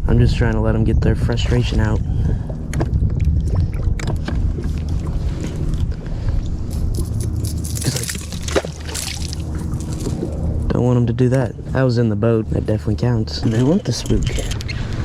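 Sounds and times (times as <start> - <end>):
steady low rumble: 0.0 - 15.0
fish splashing in water: 6.9 - 10.6.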